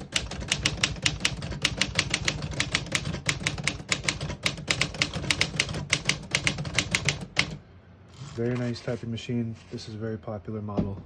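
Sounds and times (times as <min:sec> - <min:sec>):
typewriter typing: 0:00.0 - 0:07.6.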